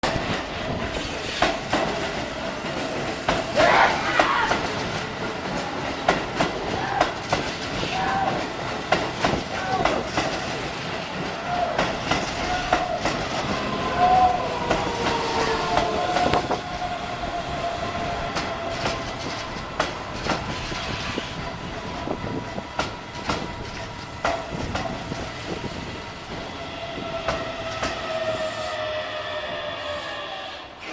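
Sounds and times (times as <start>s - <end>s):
train wheels clicking over rail joints: 0.0s - 17.3s, 18.2s - 28.3s
electric train whining tone: 11.1s - 30.9s.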